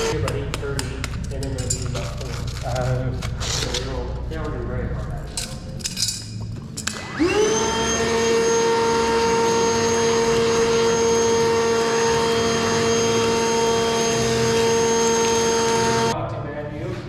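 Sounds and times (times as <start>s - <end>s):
electric motor whine: 6.9s - 16.2s.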